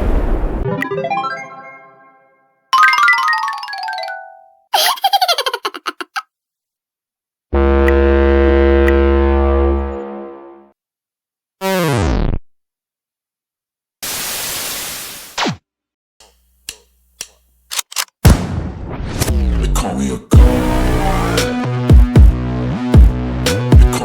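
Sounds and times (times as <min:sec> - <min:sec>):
held synthesizer chord: 0:00.7 - 0:02.5, 0:07.6 - 0:10.7
tone sliding down in pitch: 0:07.6 - 0:10.6
scattered clicks: 0:16.2 - 0:18.2.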